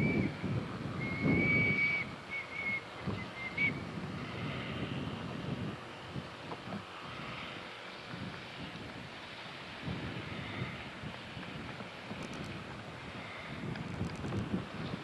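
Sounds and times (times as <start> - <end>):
wind noise on microphone: 0.0 - 15.0
steam whistle toots: 1.0 - 3.8.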